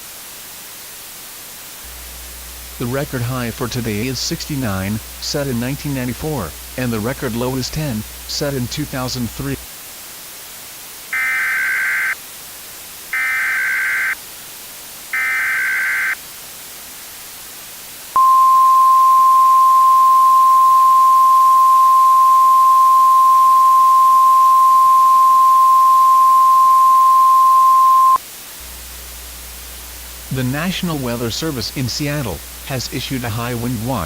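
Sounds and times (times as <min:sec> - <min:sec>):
radio hiss: 0:00.0 - 0:18.3, 0:19.8 - 0:34.0
digital data tone bursts: 0:11.2 - 0:12.2, 0:15.2 - 0:16.2, 0:18.2 - 0:28.2.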